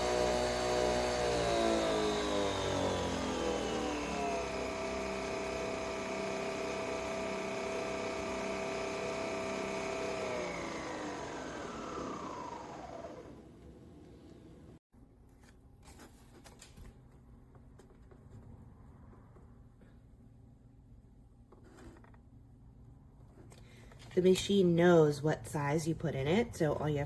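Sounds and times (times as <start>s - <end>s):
coffee machine motor whirring: 0.0s - 14.8s.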